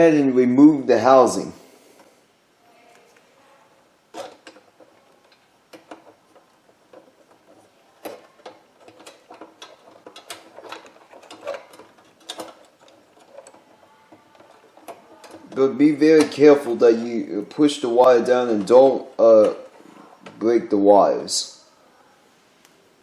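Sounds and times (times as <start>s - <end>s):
plastic and metal parts rattling: 4.1s - 20.4s.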